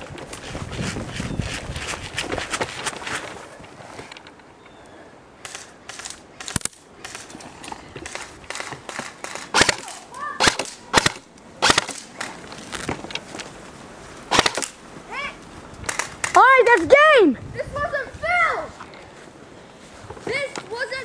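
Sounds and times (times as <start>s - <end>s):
airsoft gun shots: 8.0s - 12.3s, 14.3s - 14.8s, 15.9s - 16.4s.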